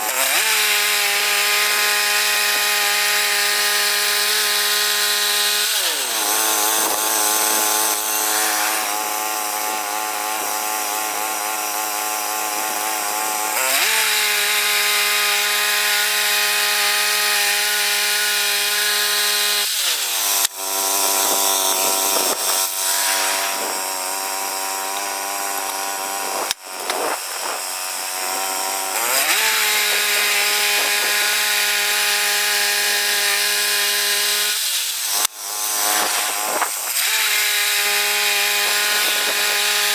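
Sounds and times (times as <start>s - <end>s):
saw blade hissing through wood: 17.5s - 31.4s, 33.9s - 39.9s.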